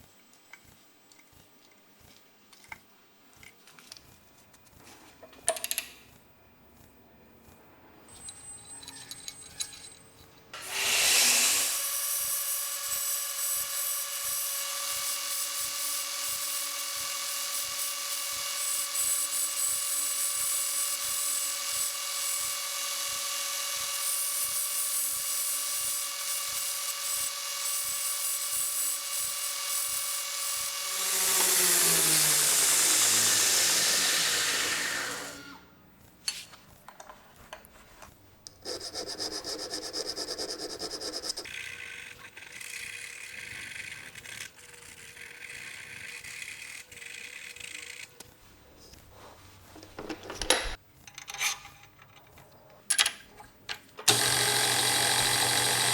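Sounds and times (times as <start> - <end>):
machine tool motor whining: 30.2 - 35.6, 54.1 - 55.9.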